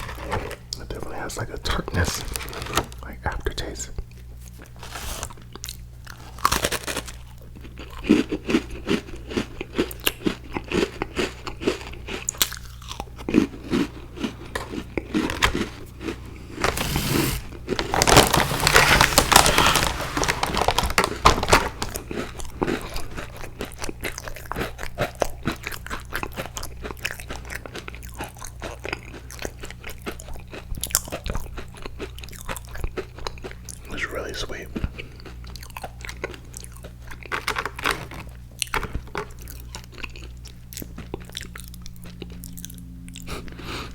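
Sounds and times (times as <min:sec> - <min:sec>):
crunchy cookies being chewed: 0:00.0 - 0:16.8, 0:17.4 - 0:43.9.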